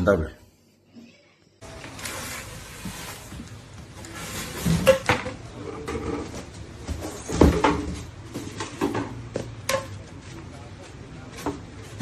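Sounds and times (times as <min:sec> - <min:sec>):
rustling: 0:01.6 - 0:05.2.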